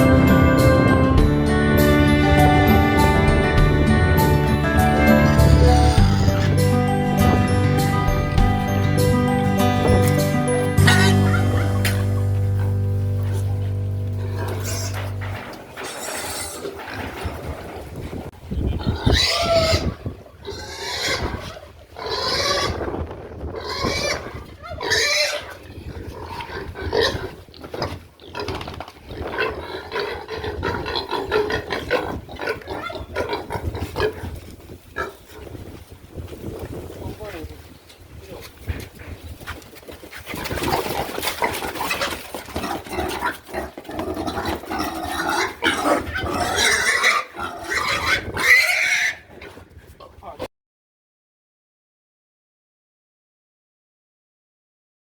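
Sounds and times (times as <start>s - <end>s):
pigs squealing: 4.5s - 8.6s, 10.7s - 13.5s, 14.2s - 17.4s, 18.8s - 22.9s, 23.5s - 34.3s, 40.1s - 49.5s.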